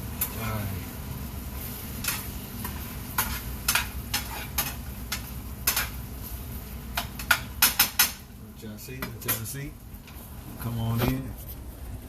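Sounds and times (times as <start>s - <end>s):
steady low hum: 0.0s - 12.0s
utensil scraping in a pan: 1.5s - 8.2s.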